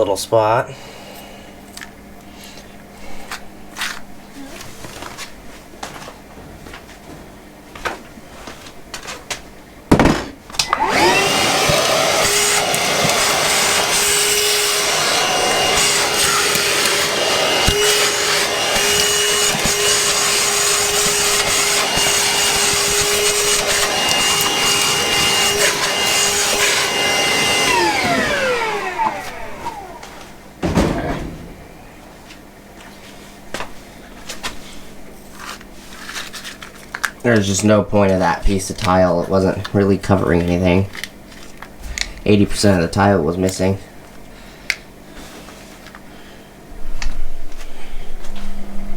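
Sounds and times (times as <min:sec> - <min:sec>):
shop vacuum whining: 0:09.9 - 0:32.4
knocks: 0:30.6 - 0:31.7.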